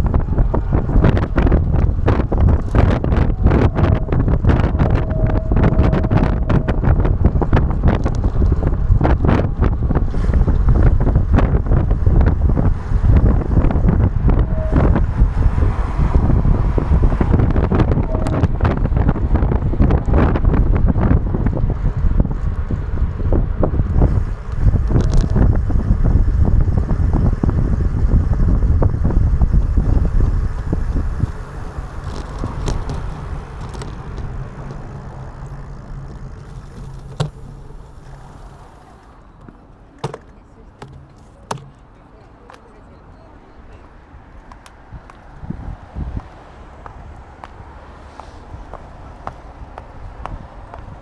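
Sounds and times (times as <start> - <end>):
wind buffeting microphone: 0.0 - 51.0
short knocks and taps: 39.4 - 42.6.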